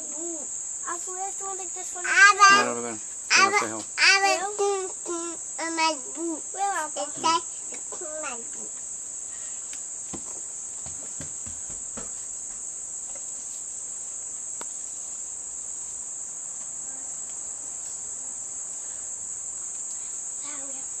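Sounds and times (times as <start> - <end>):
insects trilling: 0.0 - 21.0
soft knocks: 10.1 - 12.6.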